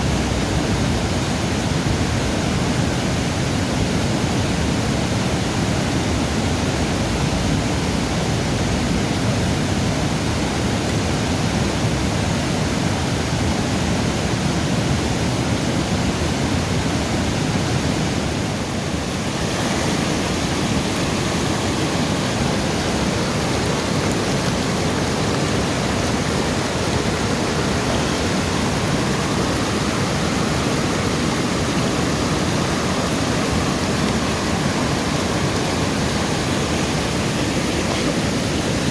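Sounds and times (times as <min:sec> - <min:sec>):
river water rushing: 0:00.0 - 0:38.9.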